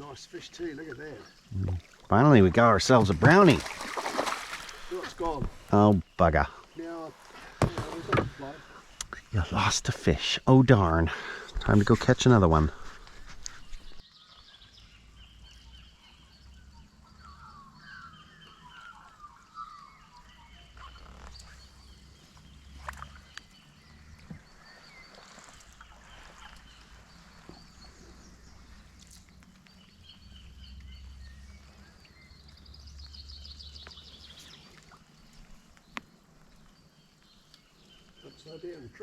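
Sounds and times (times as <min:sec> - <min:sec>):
birds calling: 0:00.0 - 0:39.0.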